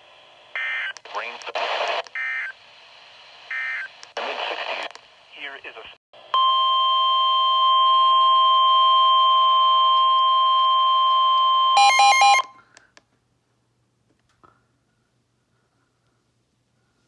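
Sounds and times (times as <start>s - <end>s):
steady alarm tone: 6.4s - 12.6s.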